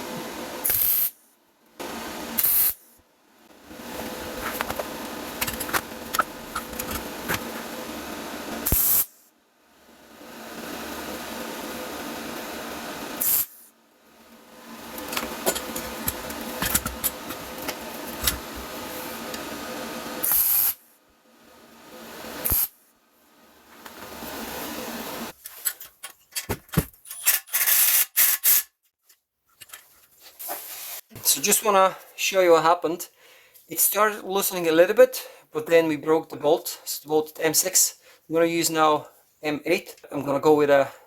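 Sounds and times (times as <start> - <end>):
welder arc hissing and crackling: 0.4 - 3.0, 3.6 - 13.8, 14.5 - 21.0, 22.0 - 22.8, 23.8 - 25.4.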